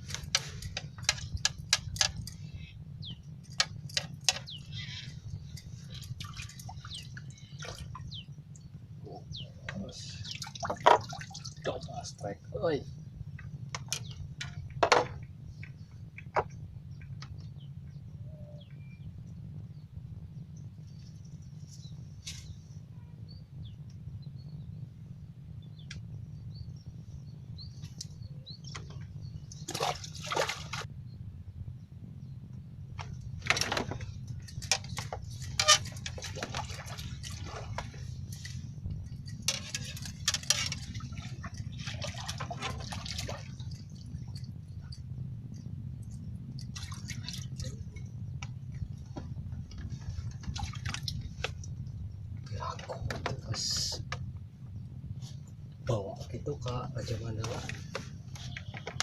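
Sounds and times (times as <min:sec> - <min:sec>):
steady low rumble: 0:00.0 - 0:59.0
faint bird chirps: 0:01.9 - 0:10.6, 0:15.6 - 0:30.0
water splashing: 0:09.9 - 0:12.1, 0:29.6 - 0:30.9, 0:33.5 - 0:38.4, 0:39.4 - 0:44.4, 0:46.6 - 0:48.1.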